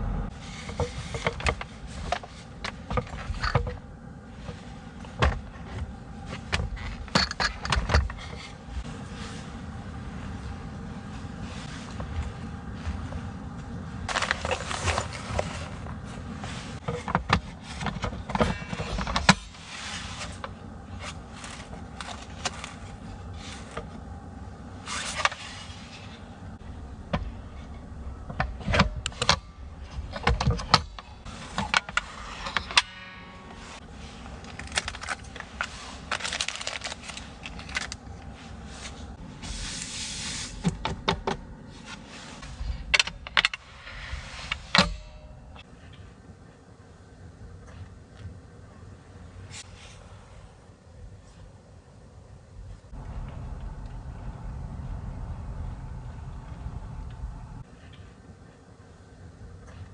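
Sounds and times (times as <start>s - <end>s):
handling clicks and knocks: 4.5s - 8.6s.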